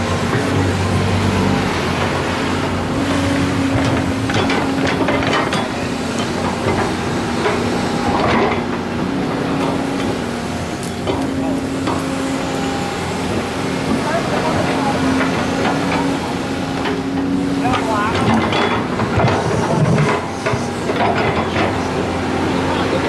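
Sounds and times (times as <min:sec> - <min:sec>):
excavator diesel engine running: 0:00.0 - 0:23.0
sharp knocks and clatter: 0:03.7 - 0:08.8, 0:14.0 - 0:21.9.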